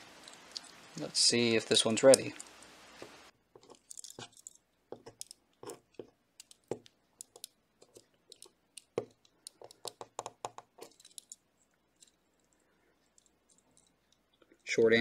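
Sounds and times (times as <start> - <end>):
clicks and taps of toy car handling: 3.6 - 11.4.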